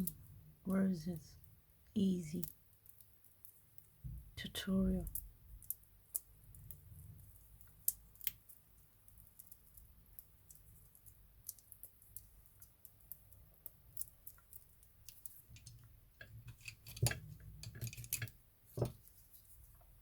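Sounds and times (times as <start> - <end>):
small tools clicking on hard surface: 9.3 - 19.0.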